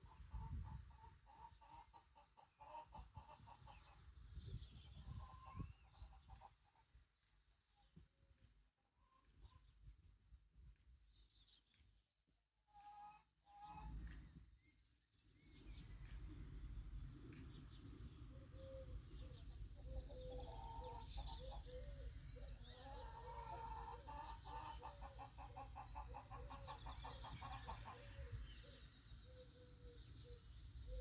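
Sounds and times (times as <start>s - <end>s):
chickens clucking: 0.0s - 4.1s, 19.0s - 21.7s, 22.4s - 28.3s.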